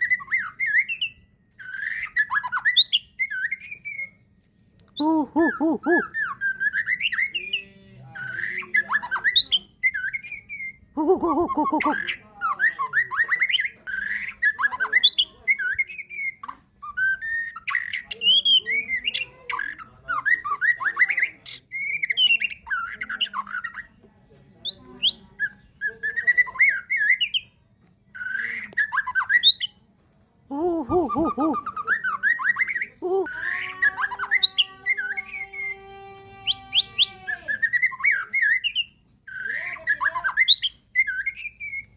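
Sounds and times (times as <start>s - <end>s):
songbird singing: 5.0s - 7.7s, 11.0s - 12.1s, 30.5s - 35.7s
harsh bird squawks: 11.0s - 12.1s.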